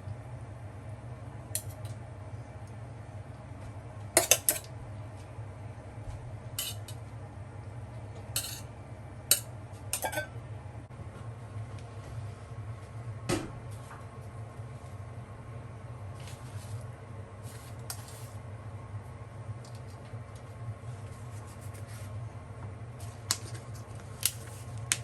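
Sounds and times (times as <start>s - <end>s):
steady low hum: 0.0s - 25.0s
cutlery clinking on dishes: 6.6s - 6.9s, 8.4s - 8.6s, 9.3s - 10.3s.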